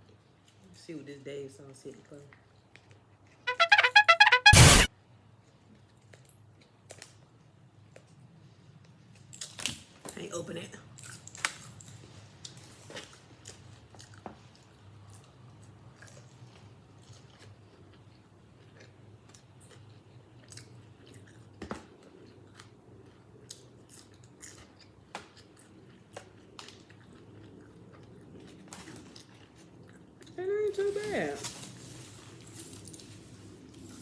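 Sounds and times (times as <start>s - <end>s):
person chewing and crunching food: 16.0s - 21.6s, 22.2s - 30.4s.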